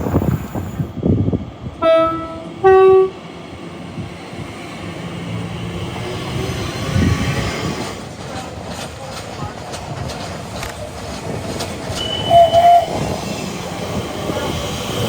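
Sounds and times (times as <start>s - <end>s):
rumble of passing train: 0.0s - 15.0s
two-tone train horn: 1.8s - 3.2s, 12.0s - 13.0s.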